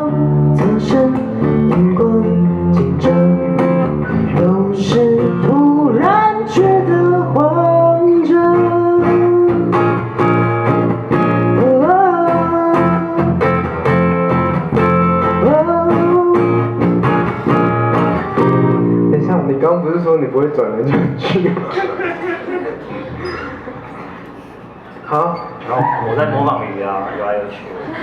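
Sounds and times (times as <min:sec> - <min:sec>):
person singing: 0:00.0 - 0:09.8, 0:11.5 - 0:13.4, 0:15.3 - 0:16.8
acoustic guitar: 0:00.0 - 0:19.4.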